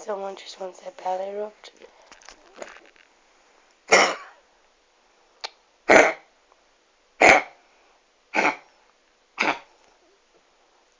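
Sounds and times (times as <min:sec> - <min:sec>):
dog coughing harshly: 0:03.9 - 0:04.4, 0:05.9 - 0:06.3, 0:07.2 - 0:07.6, 0:08.3 - 0:08.7, 0:09.4 - 0:09.7.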